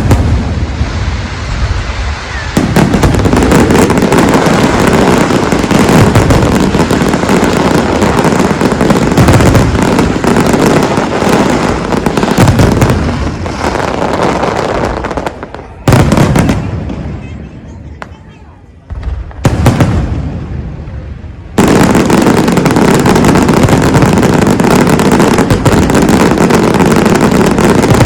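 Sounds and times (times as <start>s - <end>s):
deep fireworks booms: 0.0s - 28.0s
fireworks bangs and crackles: 0.0s - 28.0s.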